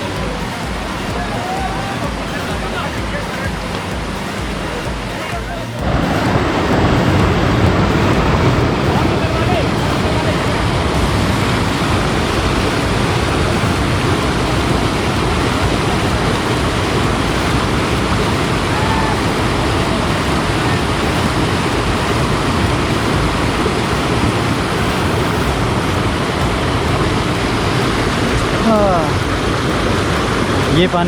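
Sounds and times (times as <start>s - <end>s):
rushing river water: 0.0s - 31.0s.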